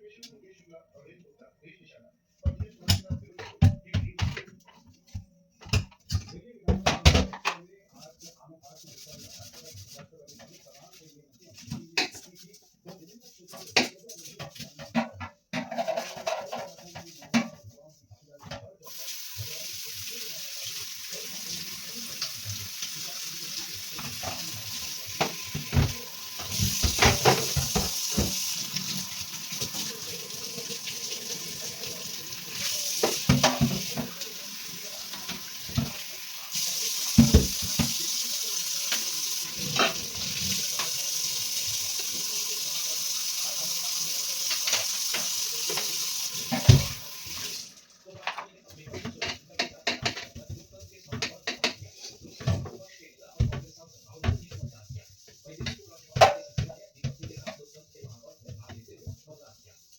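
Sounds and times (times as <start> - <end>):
dishes clattering while washed: 2.4 - 7.6, 11.6 - 12.5, 13.2 - 17.8, 18.4 - 59.2
tap running into a sink: 19.0 - 47.6.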